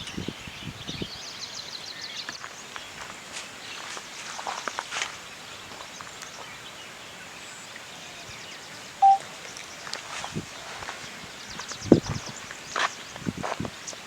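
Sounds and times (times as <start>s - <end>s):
short steady beep: 9.0s - 9.2s.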